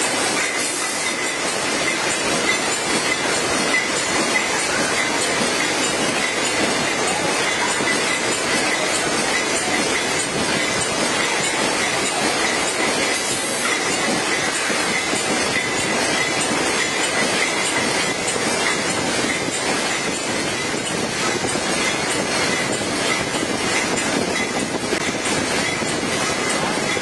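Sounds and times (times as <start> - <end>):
packaging machinery clattering: 0.0 - 27.0.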